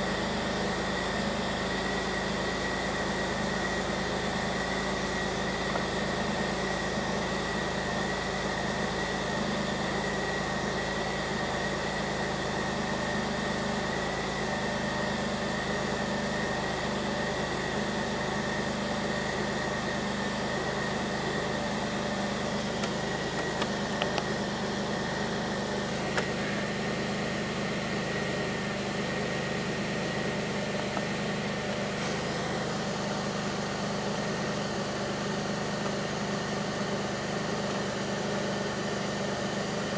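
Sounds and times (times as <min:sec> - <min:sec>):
car engine idling: 0:00.0 - 0:39.9
light engine ticks: 0:22.8 - 0:24.4, 0:30.7 - 0:31.1.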